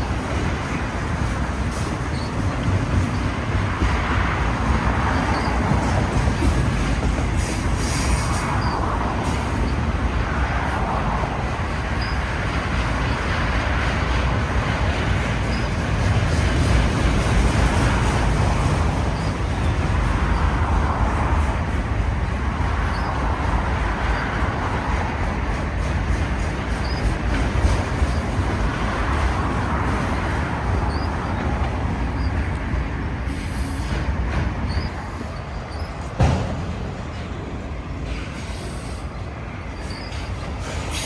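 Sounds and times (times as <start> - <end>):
train wheels rumbling on rail: 0.0 - 41.0
high wheel squeals: 1.7 - 3.9, 4.9 - 9.9, 11.8 - 13.8, 15.4 - 15.8, 18.0 - 21.0, 22.6 - 24.6, 26.7 - 27.2, 28.0 - 28.4, 29.6 - 32.6, 33.2 - 36.9, 37.7 - 41.0.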